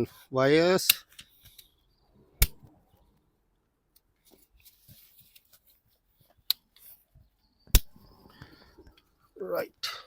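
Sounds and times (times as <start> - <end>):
faint handling rustle: 4.0 - 7.5.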